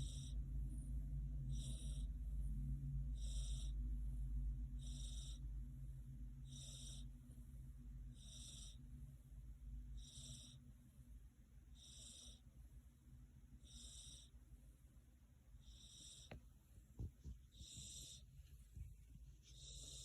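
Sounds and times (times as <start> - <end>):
cat snoring faintly: 0.0 - 12.6, 13.6 - 15.0, 15.6 - 20.0
soft bumps: 16.3 - 19.5.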